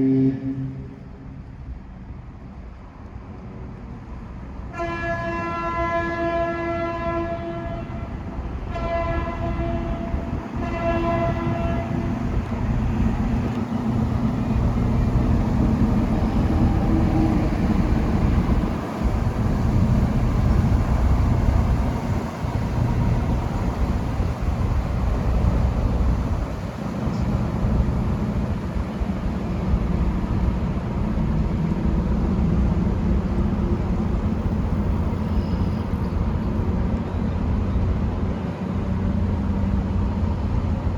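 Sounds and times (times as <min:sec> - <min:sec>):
horn blasts: 0:04.7 - 0:08.1, 0:08.7 - 0:12.5.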